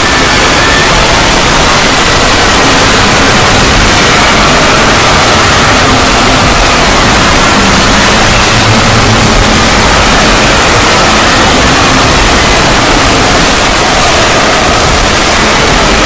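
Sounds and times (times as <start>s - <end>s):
faint gliding tones: 0.0s - 16.0s
loud static noise: 0.0s - 16.0s.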